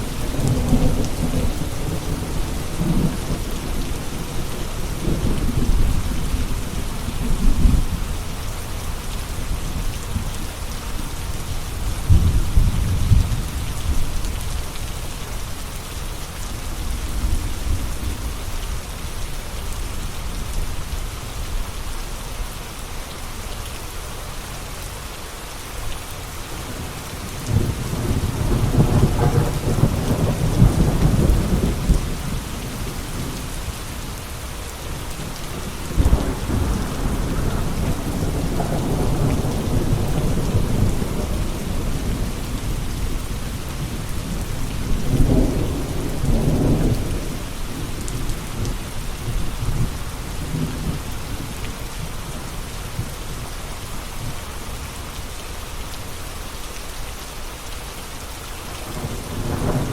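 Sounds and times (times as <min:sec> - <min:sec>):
steady rain falling: 0:00.0 - 0:59.9
thunder rumbling: 0:26.7 - 0:34.2, 0:35.2 - 0:51.6, 0:58.9 - 0:59.9.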